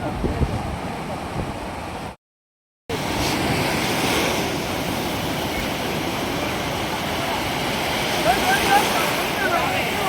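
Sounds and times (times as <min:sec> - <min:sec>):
sea surf breaking on beach: 0:02.9 - 0:10.0.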